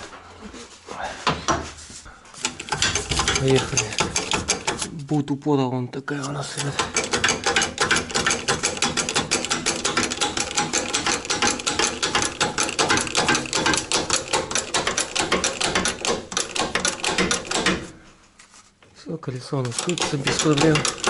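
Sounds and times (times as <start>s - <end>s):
ratchet clicking rapidly: 2.4s - 4.9s, 6.6s - 17.8s, 19.8s - 21.0s.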